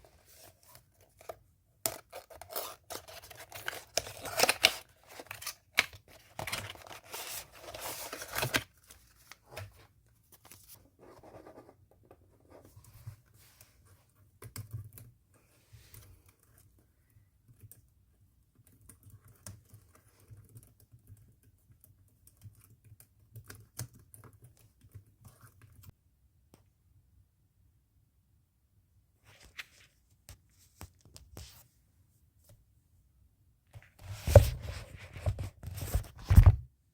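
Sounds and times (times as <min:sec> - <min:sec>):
packaging tearing: 0:02.2 - 0:08.6.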